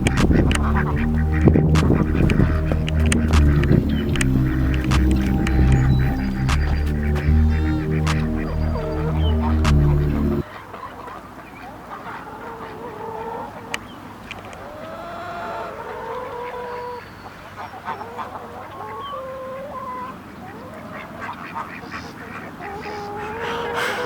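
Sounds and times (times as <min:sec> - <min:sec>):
background music: 0:00.0 - 0:10.4
poultry calling: 0:00.0 - 0:11.1, 0:14.7 - 0:24.0.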